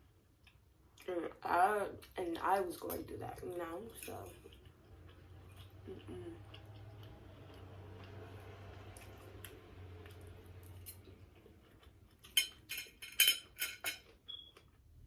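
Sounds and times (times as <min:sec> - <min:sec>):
faint hum: 0:01.0 - 0:12.2
cutlery clinking on a plate: 0:12.2 - 0:14.2.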